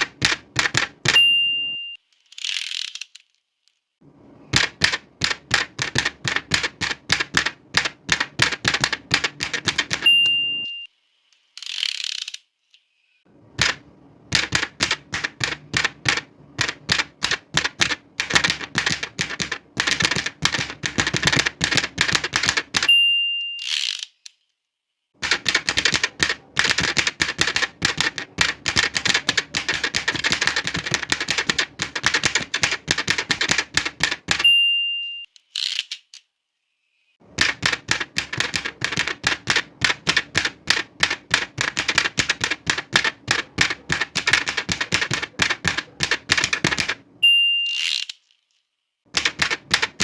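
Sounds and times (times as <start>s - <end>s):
typewriter carriage return swish: 0.0s - 1.3s, 4.5s - 10.4s, 13.6s - 22.9s, 25.2s - 34.5s, 37.3s - 47.0s, 49.1s - 50.0s
typewriter keystrokes clacking: 0.0s - 1.8s, 4.5s - 10.6s, 13.6s - 22.9s, 25.2s - 34.5s, 37.3s - 47.1s, 49.1s - 50.0s
typewriter margin bell ding: 1.1s - 2.0s, 9.5s - 10.9s, 22.7s - 23.6s, 34.3s - 35.2s, 46.8s - 47.9s.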